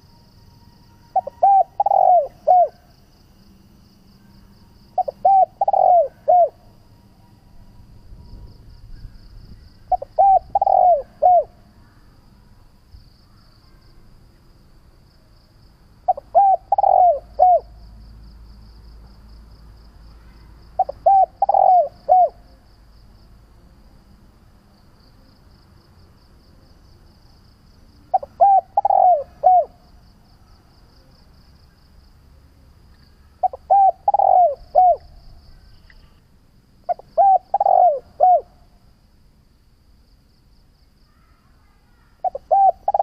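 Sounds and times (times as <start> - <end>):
dove cooing: 1.1 - 2.8, 5.0 - 6.7, 9.9 - 11.6, 16.1 - 17.7, 20.8 - 22.5, 28.1 - 29.8, 33.4 - 35.2, 36.9 - 38.6, 42.2 - 43.0.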